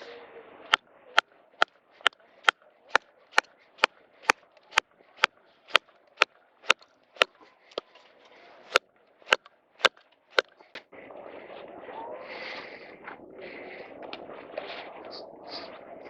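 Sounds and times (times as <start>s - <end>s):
rough steady noise: 0.0s - 7.8s, 8.7s - 10.9s.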